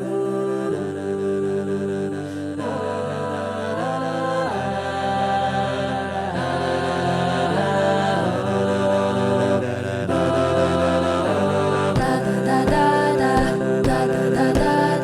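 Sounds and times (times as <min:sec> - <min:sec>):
a cappella group singing chords: 0:00.0 - 0:15.0
beatboxed kick-drum beats: 0:12.0 - 0:15.0.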